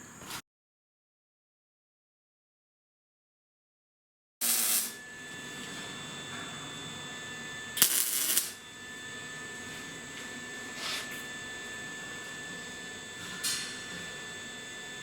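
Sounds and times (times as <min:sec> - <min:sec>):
arc welding crackling: 0:04.4 - 0:05.0, 0:07.8 - 0:08.6
welder humming whine: 0:04.4 - 0:15.0.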